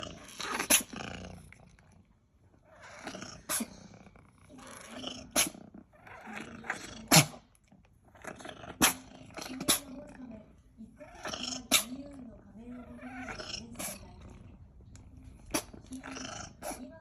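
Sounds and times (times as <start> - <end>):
cat sneezing: 0.5 - 0.9, 3.3 - 4.0, 4.8 - 5.7, 6.6 - 7.5, 8.7 - 10.0, 11.2 - 12.0, 13.1 - 14.1, 15.4 - 15.8, 16.4 - 16.9
cat noisy breathing: 2.6 - 7.5, 8.1 - 10.1, 11.0 - 17.0.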